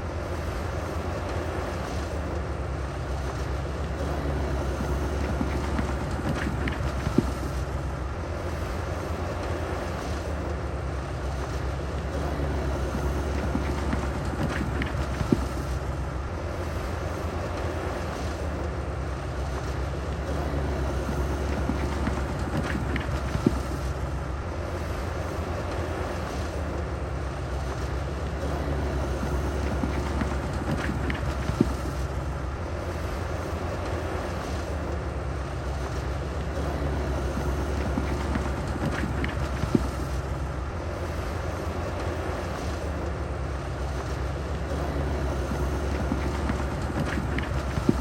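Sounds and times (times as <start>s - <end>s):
bulldozer diesel engine running: 0.0s - 48.0s.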